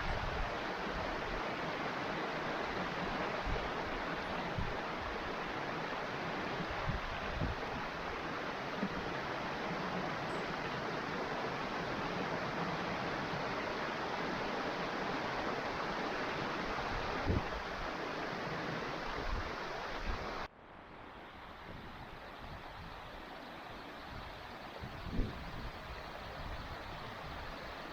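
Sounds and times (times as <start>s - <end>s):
waterfall rushing: 0.0s - 20.5s.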